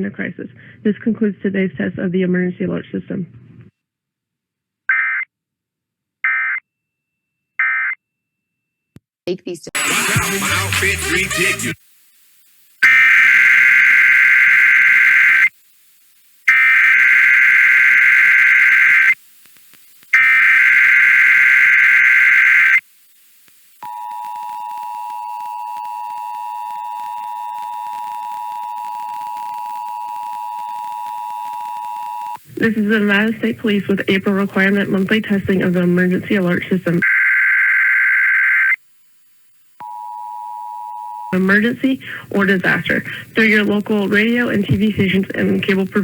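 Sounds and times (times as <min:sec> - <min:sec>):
data tone bursts: 0:09.8 - 0:11.8.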